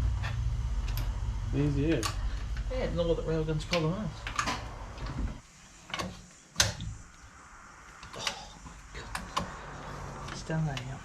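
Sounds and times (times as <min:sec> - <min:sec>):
low rumble: 0:00.0 - 0:05.4.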